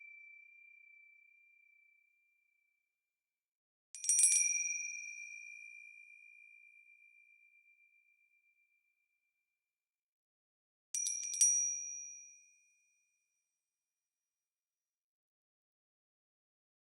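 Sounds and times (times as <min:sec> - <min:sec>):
small high-pitched bell ringing: 0:04.0 - 0:08.8, 0:11.0 - 0:13.4.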